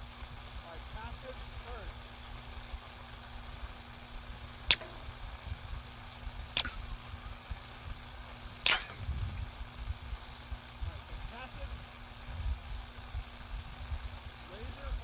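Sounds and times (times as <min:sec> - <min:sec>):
faint steady hum: 0:00.0 - 0:15.0
suppressed rifle shots: 0:04.7 - 0:05.3, 0:06.6 - 0:07.2, 0:08.6 - 0:09.3.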